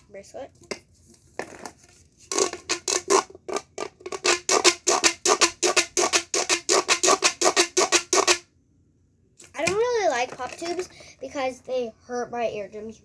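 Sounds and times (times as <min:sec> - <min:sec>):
plastic pop tube popping: 0:02.3 - 0:08.4.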